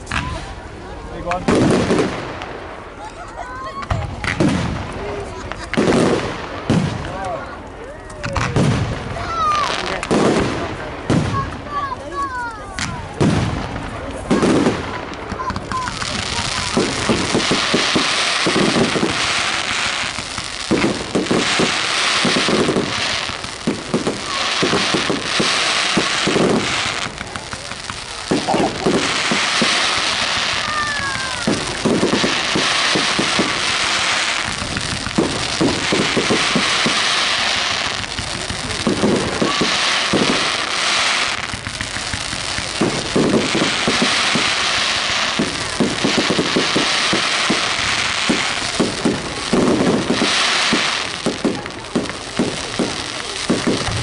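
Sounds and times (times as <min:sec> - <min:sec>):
firework crackle: 0:00.0 - 0:54.0
firework shells bursting: 0:12.7 - 0:54.0.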